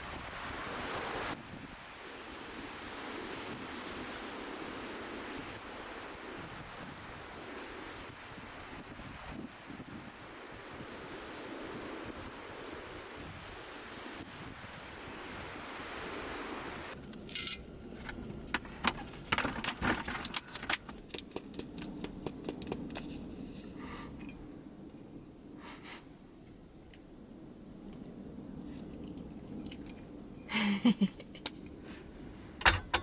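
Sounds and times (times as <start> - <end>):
ocean surf: 0.0 - 17.0
wind: 0.0 - 33.0
sharp clicks and clinks: 17.0 - 23.1, 32.6 - 33.0.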